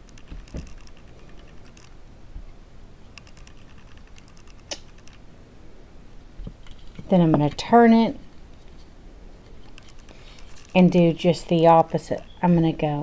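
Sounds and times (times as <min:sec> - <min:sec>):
needle clicks and yarn rustles: 0:00.0 - 0:02.0, 0:03.1 - 0:05.2, 0:08.5 - 0:13.0.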